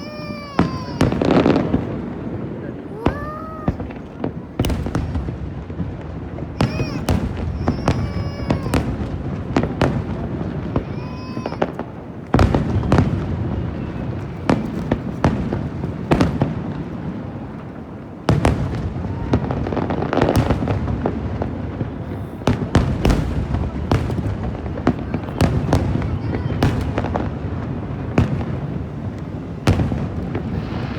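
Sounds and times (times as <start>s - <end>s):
fireworks bursts and bangs: 0.0s - 30.9s
heavy fireworks booms: 0.0s - 30.9s.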